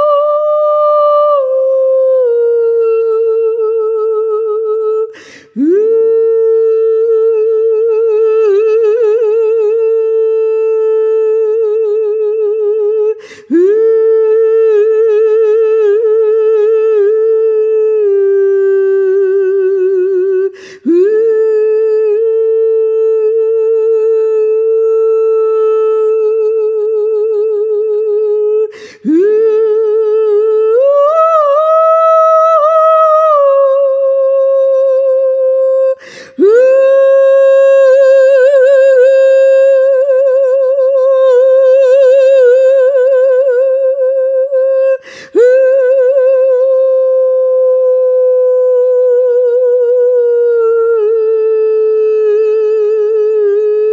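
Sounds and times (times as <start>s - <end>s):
woman singing wordless held notes: 0.0s - 53.9s
woman breathing: 5.1s - 5.6s, 13.2s - 13.5s, 20.5s - 20.9s, 28.7s - 29.1s, 36.0s - 36.4s, 45.0s - 45.4s.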